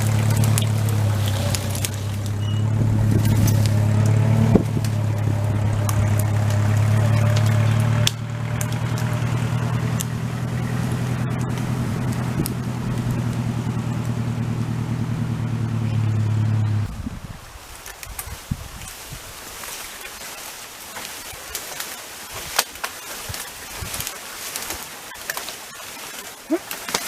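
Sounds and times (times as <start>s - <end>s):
wood cracking and snapping: 0.0s - 16.3s, 17.6s - 27.0s
engine running under load: 0.0s - 17.6s.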